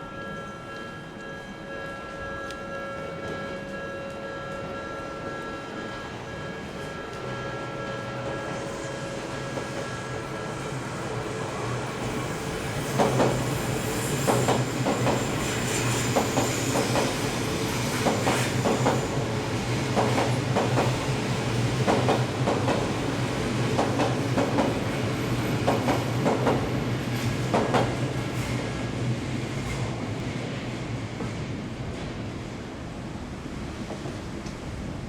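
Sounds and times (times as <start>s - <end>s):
train low hum: 0.0s - 35.0s
train wheels clacking over rail joints: 12.8s - 19.2s, 19.8s - 21.0s, 21.8s - 22.9s, 25.5s - 28.5s.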